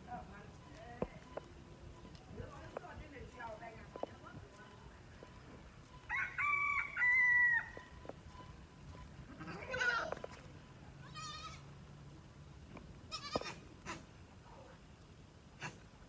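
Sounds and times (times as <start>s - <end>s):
rooster crowing: 6.1s - 7.9s
goats bleating: 9.3s - 10.2s, 11.0s - 11.7s, 13.1s - 13.6s.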